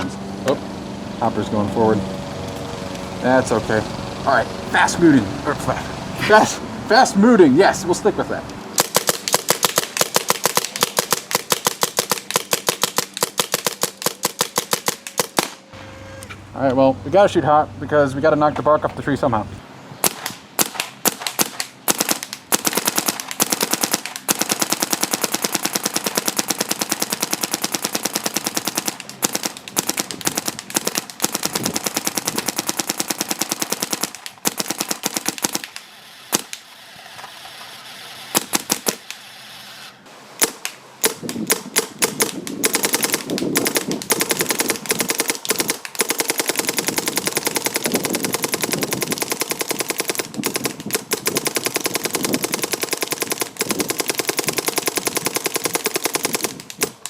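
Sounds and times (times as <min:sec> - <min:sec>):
paintball marker firing: 0:08.8 - 0:15.7, 0:20.0 - 0:36.7, 0:38.2 - 0:39.3, 0:40.4 - 0:57.0.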